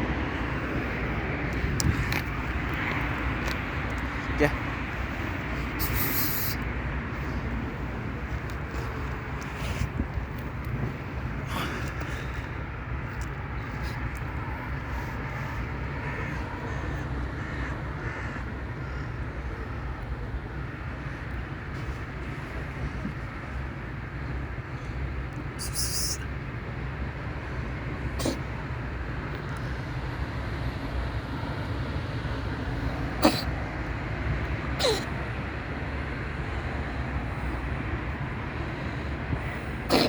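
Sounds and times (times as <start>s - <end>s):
crows cawing: 16.0s - 19.2s.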